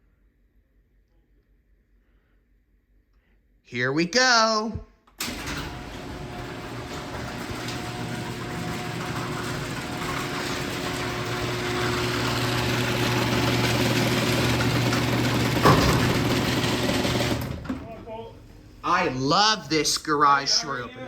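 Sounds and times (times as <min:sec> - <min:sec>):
garage door opener motor hum: 0:05.2 - 0:18.8.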